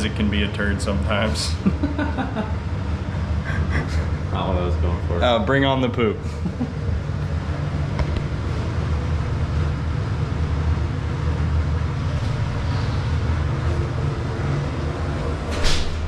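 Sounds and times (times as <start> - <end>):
low mechanical rumble: 0.0 - 16.0.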